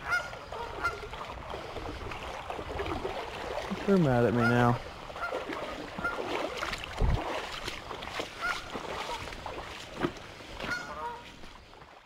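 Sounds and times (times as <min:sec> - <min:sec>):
geese honking: 0:00.0 - 0:01.7, 0:04.2 - 0:06.3, 0:08.3 - 0:09.2, 0:10.6 - 0:11.3
creek water splashing: 0:00.0 - 0:12.0.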